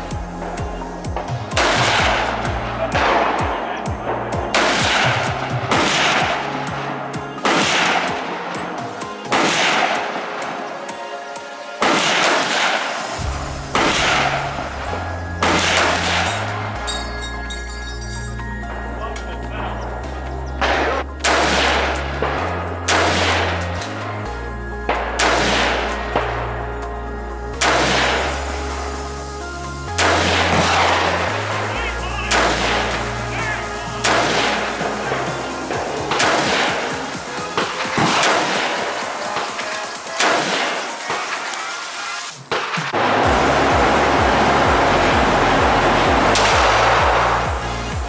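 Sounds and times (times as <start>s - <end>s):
electronic background music: 0.0s - 48.0s
gunshots ringing: 0.2s - 17.6s, 20.6s - 24.2s, 24.8s - 26.5s, 27.6s - 28.6s, 30.0s - 47.5s
rifle shots with echo: 1.4s - 10.9s, 11.8s - 14.8s, 20.6s - 24.0s, 24.9s - 26.4s, 27.6s - 28.6s, 30.0s - 31.7s, 32.3s - 41.7s.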